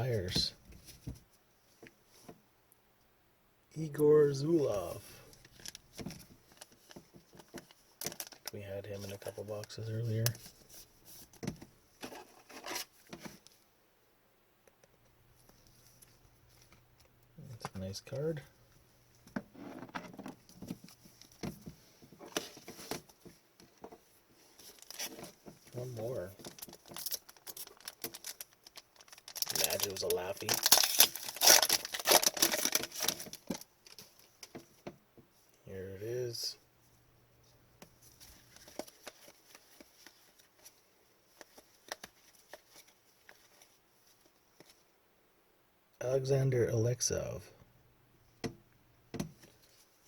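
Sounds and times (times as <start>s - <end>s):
light rustling of cards: 4.4s - 13.6s, 17.4s - 34.8s, 37.4s - 44.9s.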